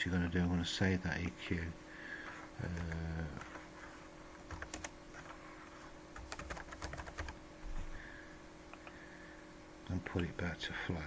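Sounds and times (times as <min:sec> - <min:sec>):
faint steady hum: 0:00.0 - 0:11.0
computer keyboard key clicks: 0:04.5 - 0:04.9, 0:06.2 - 0:07.4.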